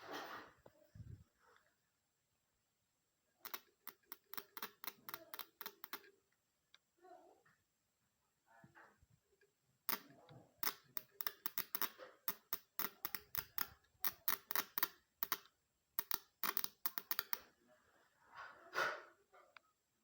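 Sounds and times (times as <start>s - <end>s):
sharp mechanical clicks: 3.4s - 6.1s, 9.9s - 17.4s.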